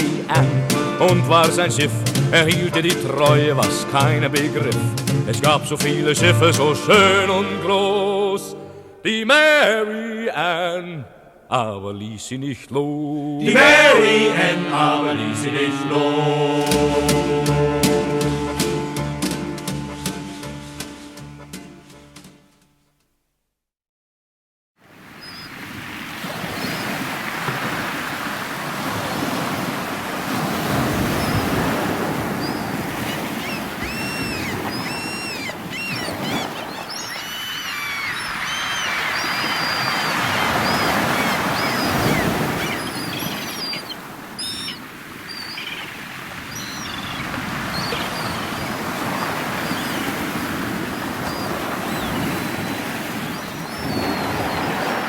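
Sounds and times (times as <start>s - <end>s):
ocean surf washing in: 0.0s - 8.7s, 13.3s - 20.9s, 24.8s - 55.0s
birds chirping: 25.2s - 25.6s, 26.4s - 27.1s, 30.6s - 55.0s.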